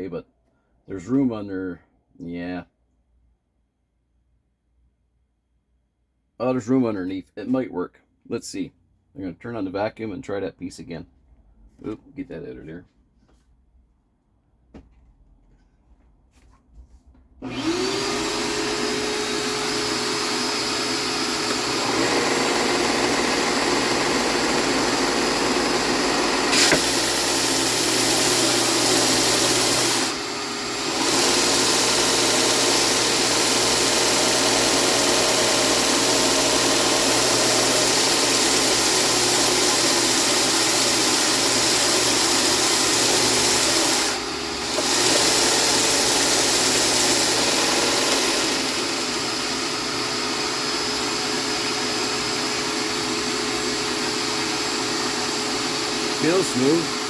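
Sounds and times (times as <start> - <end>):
belt sander sanding wood: 17.4 - 57.0
shop vacuum motor: 17.4 - 57.0.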